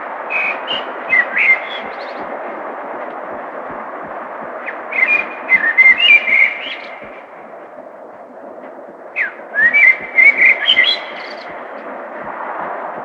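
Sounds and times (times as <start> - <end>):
city traffic hum: 0.0 - 13.0
songbird chirping and whistling: 0.3 - 2.6, 4.4 - 7.5, 9.1 - 12.3.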